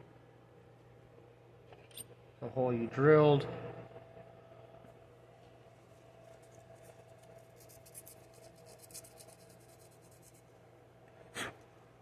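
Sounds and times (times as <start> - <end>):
hands scratching on plastic parts: 6.4 - 10.4.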